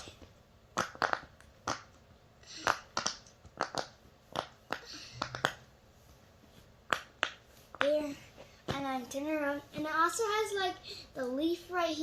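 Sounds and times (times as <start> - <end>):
fidget toy bubbles popping: 0.7 - 5.7.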